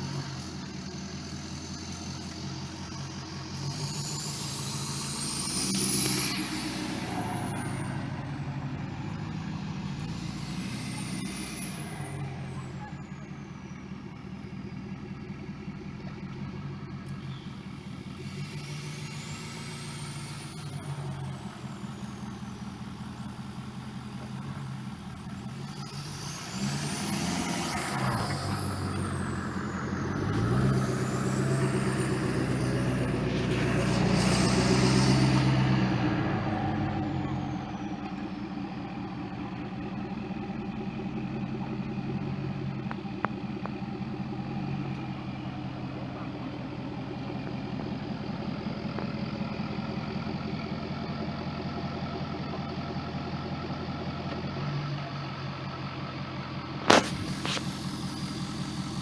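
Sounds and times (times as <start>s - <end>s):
vehicle engine revving: 0.0s - 59.0s.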